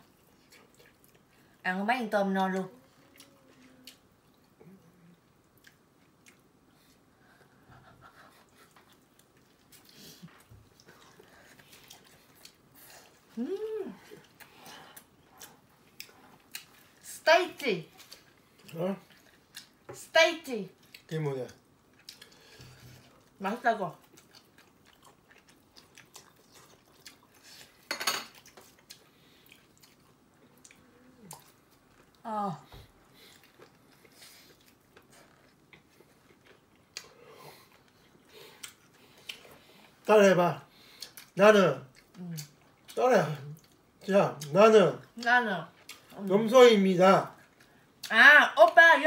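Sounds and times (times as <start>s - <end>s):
chewing shrimp: 0.0s - 1.6s, 2.6s - 7.1s, 8.4s - 17.0s, 17.9s - 20.0s, 20.7s - 40.1s, 40.7s - 46.3s
tableware clatter: 27.9s - 28.4s
tableware clinking: 27.9s - 28.4s.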